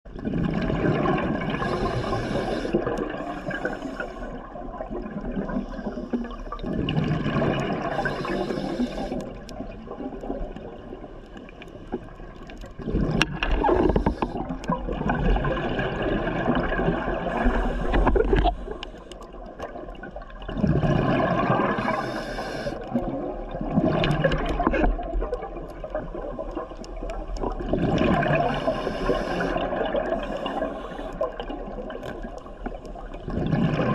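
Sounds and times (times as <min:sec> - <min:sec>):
gurgling exhaled bubbles: 0:00.1 - 0:33.9
regulator hiss on inhale: 0:01.5 - 0:04.5, 0:07.8 - 0:09.4, 0:13.7 - 0:14.4, 0:17.3 - 0:19.2, 0:21.7 - 0:23.0, 0:28.4 - 0:31.4.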